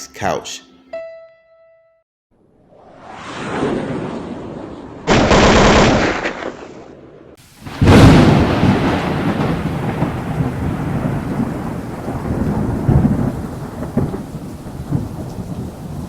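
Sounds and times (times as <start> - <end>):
thunder rumbling: 3.3 - 16.0
steady rain: 7.4 - 16.0.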